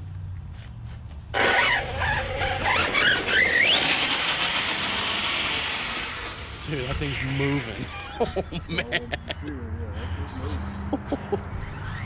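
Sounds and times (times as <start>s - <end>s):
toy truck running at speed: 1.4s - 8.0s, 11.4s - 12.0s
electric motor whining: 1.4s - 8.1s.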